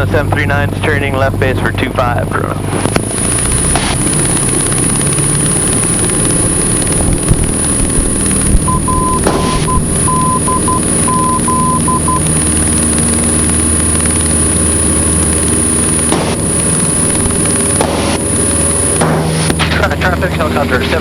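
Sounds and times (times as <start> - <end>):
aircraft engine and propeller droning: 0.0 - 21.0
beeps in dot-and-dash pattern: 8.7 - 12.2.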